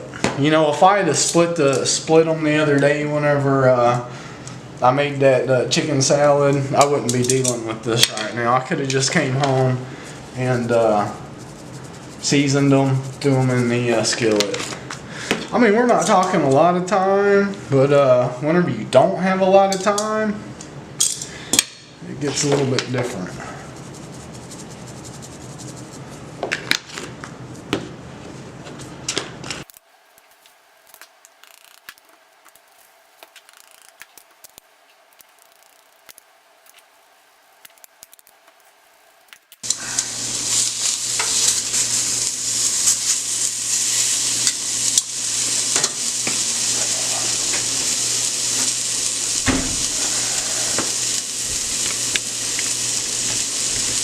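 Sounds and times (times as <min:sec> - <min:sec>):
chicken sizzling in skillet: 0:07.1 - 0:14.9, 0:39.2 - 0:54.0.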